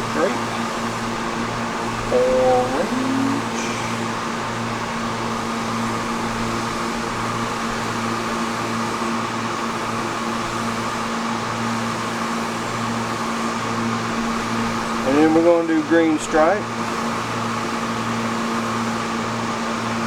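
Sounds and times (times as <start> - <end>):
industrial machinery drone: 0.0 - 4.9.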